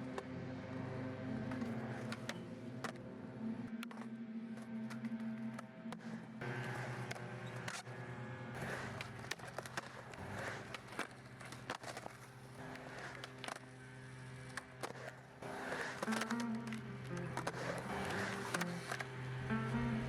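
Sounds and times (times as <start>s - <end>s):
skateboard rolling on concrete: 1.2s - 20.0s.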